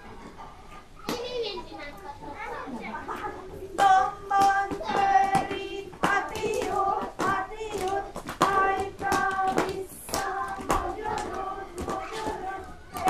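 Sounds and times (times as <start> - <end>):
children singing: 3.1 - 13.0
hand claps: 3.8 - 13.0.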